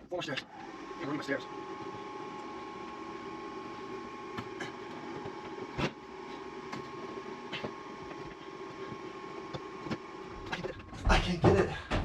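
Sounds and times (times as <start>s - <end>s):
steady machine hum: 0.0s - 12.0s.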